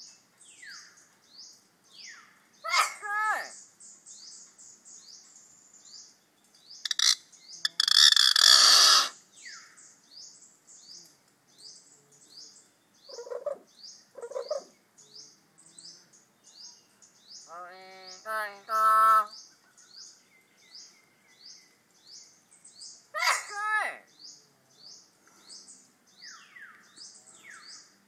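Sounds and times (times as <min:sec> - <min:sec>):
pet bird chirping: 0:06.7 - 0:09.6, 0:13.1 - 0:15.2
voice-like bird call: 0:06.9 - 0:09.2.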